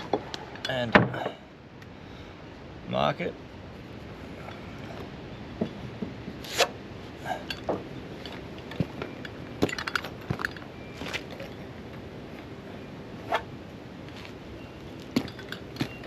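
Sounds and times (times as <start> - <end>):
small metallic clinks: 7.3 - 11.6, 15.2 - 16.0.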